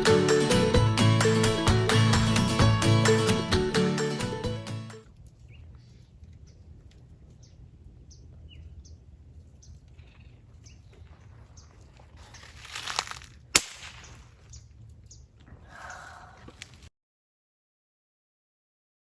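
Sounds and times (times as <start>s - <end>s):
low steady rumble: 5.1s - 12.4s
small birds chirping: 5.4s - 13.1s, 13.9s - 16.6s.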